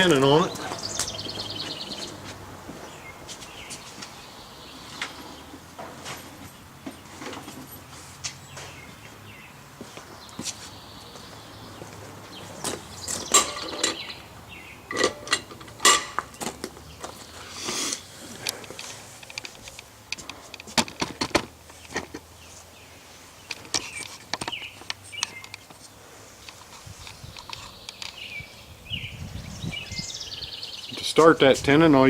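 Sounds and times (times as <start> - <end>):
steel tools clanking: 13.1 - 14.3, 14.9 - 16.4.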